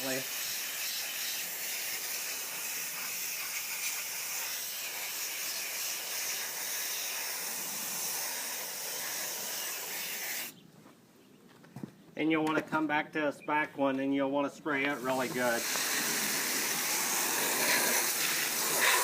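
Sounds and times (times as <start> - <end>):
hose spraying water: 0.0 - 10.5, 14.8 - 19.0.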